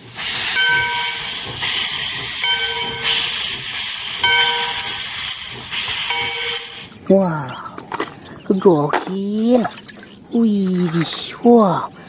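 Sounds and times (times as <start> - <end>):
whining tone: 0.0 - 3.5, 4.1 - 5.1, 5.8 - 6.9
hissing water spray: 0.0 - 7.0.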